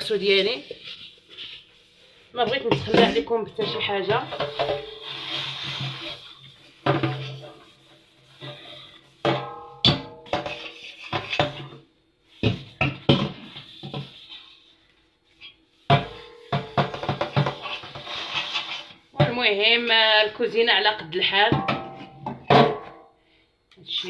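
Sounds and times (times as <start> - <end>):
metal pot clanking in a sink: 6.8 - 11.8, 15.9 - 18.5, 21.5 - 23.1.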